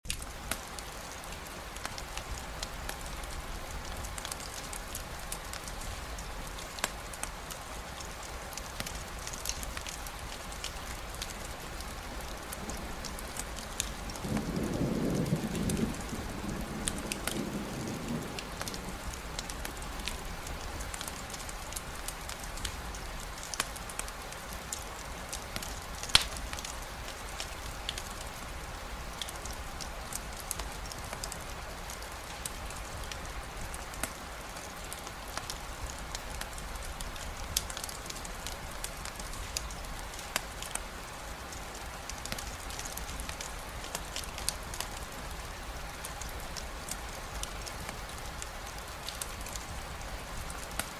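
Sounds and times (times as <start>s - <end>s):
steady rain falling: 0.0s - 50.9s
campfire crackling and popping: 0.1s - 50.9s
low rumble of thunder: 11.9s - 21.4s.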